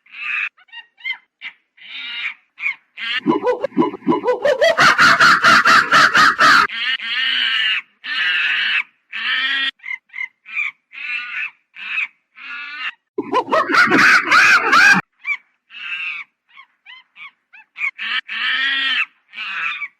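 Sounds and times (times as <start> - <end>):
monkey calling: 3.1 - 6.7, 13.2 - 18.2.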